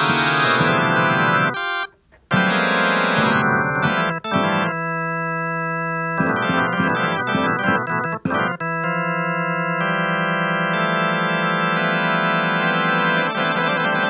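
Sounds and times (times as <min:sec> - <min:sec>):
electronic keyboard organ chords: 0:00.0 - 0:14.0.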